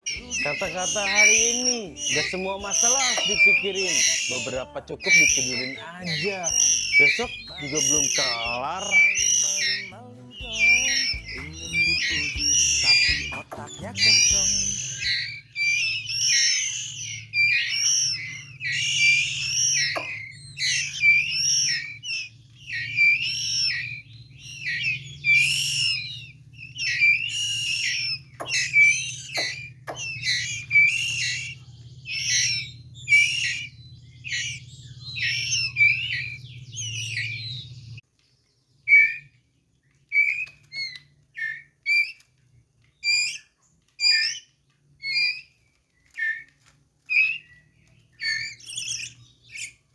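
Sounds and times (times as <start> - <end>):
bird chick whistled calls: 0.0 - 38.2, 38.8 - 49.9
low hum: 0.1 - 38.0.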